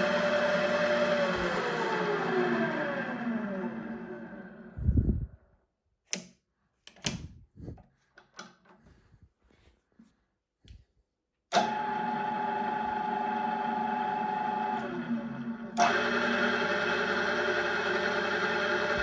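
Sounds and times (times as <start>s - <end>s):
drill press gear whine: 11.5s - 19.0s.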